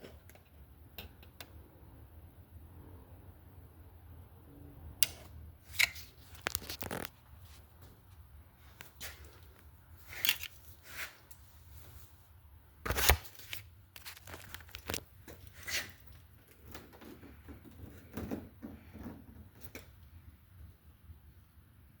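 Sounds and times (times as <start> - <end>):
handling rustling and scraping: 5.6 - 20.3.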